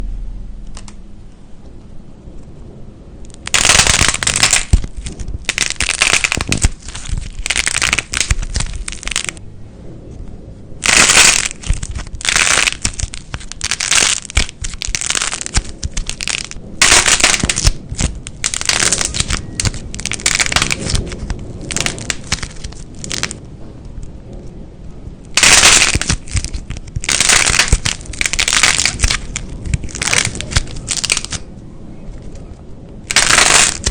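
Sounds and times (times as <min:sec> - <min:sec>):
slime crackling and popping: 0:03.3 - 0:09.4, 0:10.8 - 0:23.4, 0:25.3 - 0:31.5, 0:33.0 - 0:33.9.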